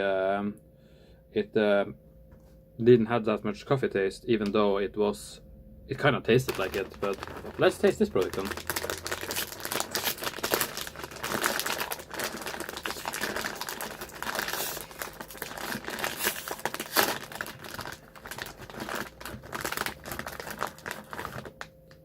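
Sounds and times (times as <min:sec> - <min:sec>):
plastic packaging crinkling: 0:06.3 - 0:22.0.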